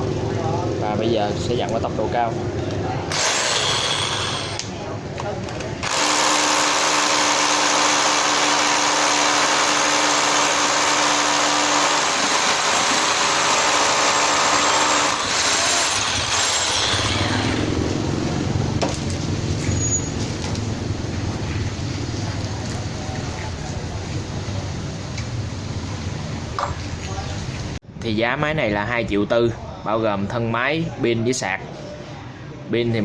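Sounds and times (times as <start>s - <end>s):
hammer drill grinding into concrete: 3.1s - 4.7s, 5.8s - 17.7s.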